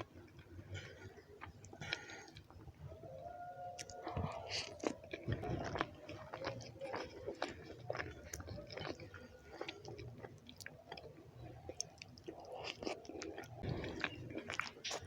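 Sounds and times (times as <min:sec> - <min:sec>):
close chewing with wet smacks: 0:00.0 - 0:03.2, 0:03.8 - 0:15.0.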